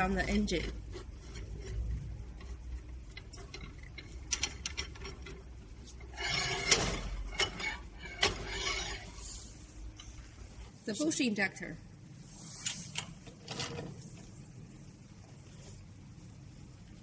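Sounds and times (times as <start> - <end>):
scraping rustle: 5.0 - 9.8.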